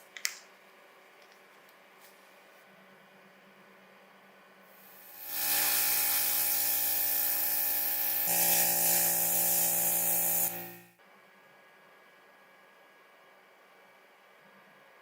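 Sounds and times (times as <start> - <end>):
motor hum: 4.8 - 10.9
spray tool hissing: 4.8 - 10.9.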